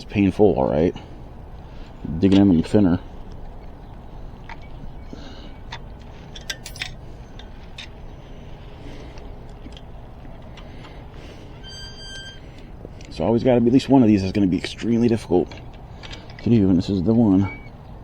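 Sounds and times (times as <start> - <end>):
low background hum: 0.0 - 18.0.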